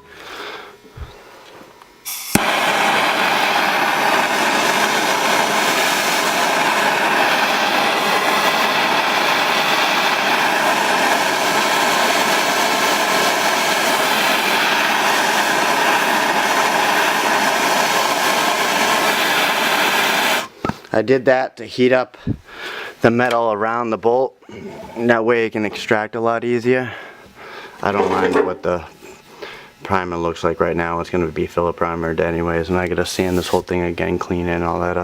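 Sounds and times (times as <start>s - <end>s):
gas torch burning: 2.0s - 20.8s, 27.0s - 35.0s.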